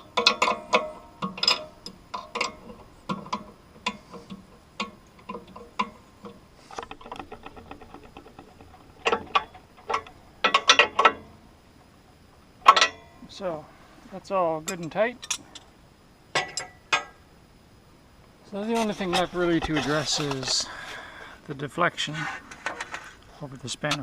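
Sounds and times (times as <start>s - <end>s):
metal clinks: 0.0s - 11.4s.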